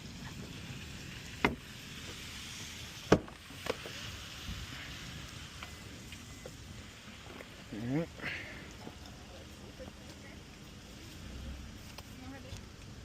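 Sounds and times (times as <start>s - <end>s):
steady outdoor hiss: 0.0s - 13.0s.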